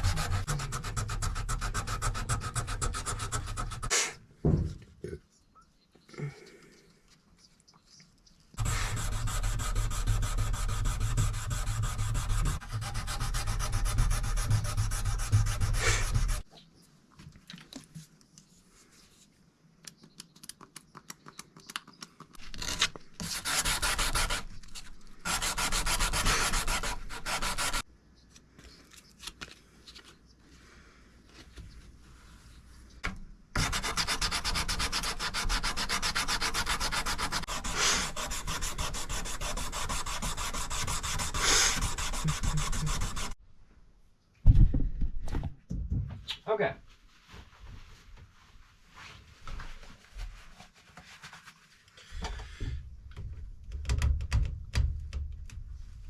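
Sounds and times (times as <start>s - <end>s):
sandpaper scraping metal blade: 0.0s - 4.0s, 8.6s - 16.4s, 22.6s - 27.8s, 33.6s - 43.4s.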